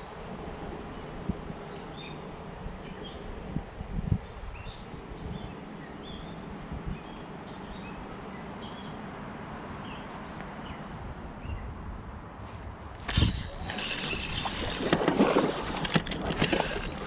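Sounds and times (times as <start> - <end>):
outdoor background noise: 0.0 - 17.0
small birds chirping: 9.7 - 17.0.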